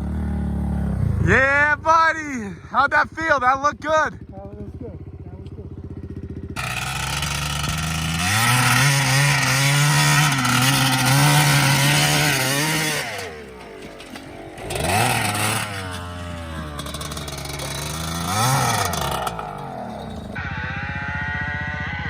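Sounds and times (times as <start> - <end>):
small engine revving: 6.0 - 22.0.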